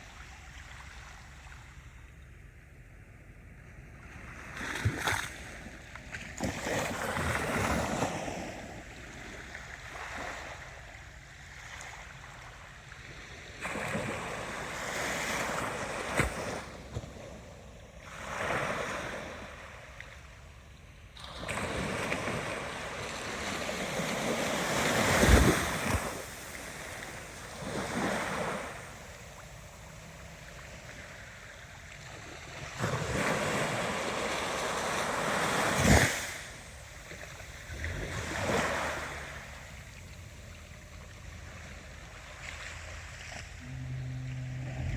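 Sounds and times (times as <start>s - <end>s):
ocean waves breaking: 13.1s - 20.5s, 21.2s - 44.9s.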